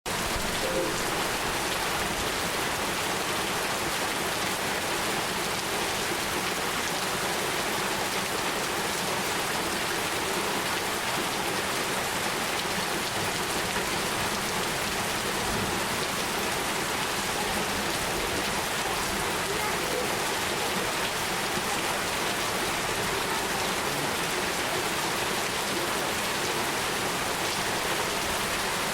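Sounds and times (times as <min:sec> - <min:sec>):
rain on a hard surface: 0:00.1 - 0:28.9.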